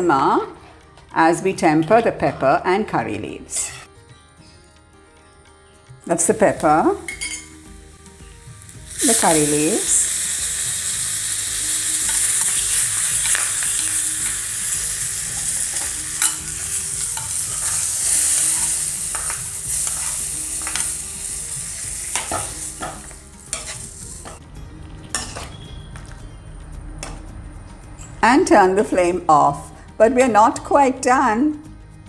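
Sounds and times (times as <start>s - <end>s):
spices sizzling in hot oil: 6.1s - 26.2s.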